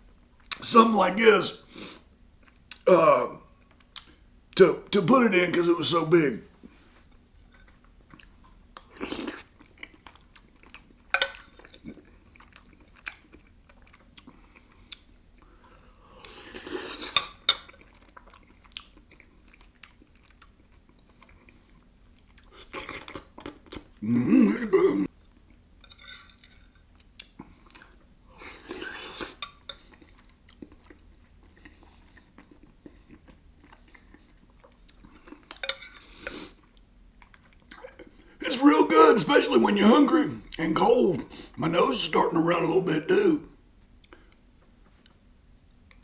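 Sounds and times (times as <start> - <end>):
person chewing: 7.6 - 15.2, 16.2 - 25.6, 26.2 - 43.4.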